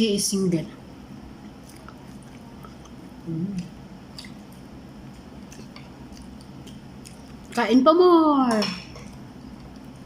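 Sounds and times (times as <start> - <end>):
person chewing food: 1.4 - 7.8, 8.9 - 10.0
person humming: 3.2 - 3.7.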